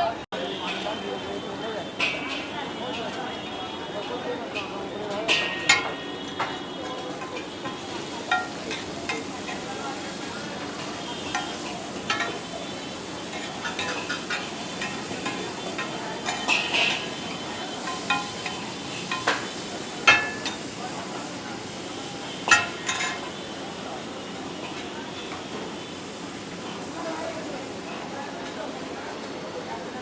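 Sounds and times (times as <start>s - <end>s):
metal spatula scraping and clanging: 5.3s - 23.5s
meat sizzling on a griddle: 6.9s - 28.6s.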